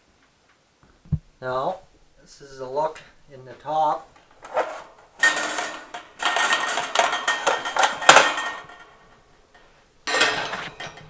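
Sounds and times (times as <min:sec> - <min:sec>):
metal stove parts rattling: 0:02.0 - 0:11.0
sharp metal clank: 0:04.1 - 0:11.0.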